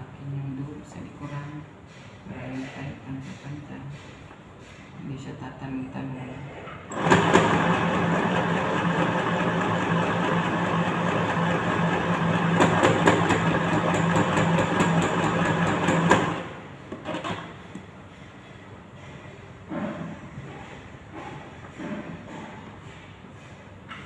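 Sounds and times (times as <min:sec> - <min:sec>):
sewing machine stitching: 0:06.9 - 0:16.5.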